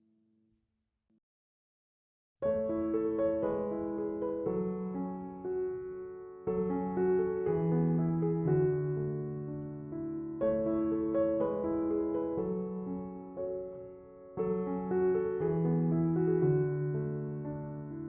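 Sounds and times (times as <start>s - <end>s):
slow gentle piano music: 2.4s - 18.0s.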